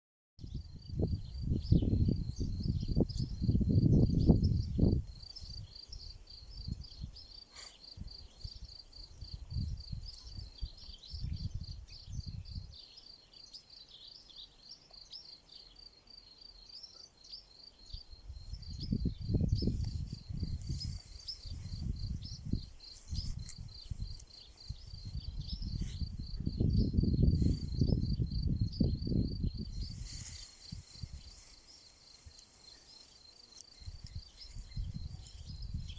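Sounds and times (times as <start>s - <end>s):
insects chirping: 0.8s - 35.9s.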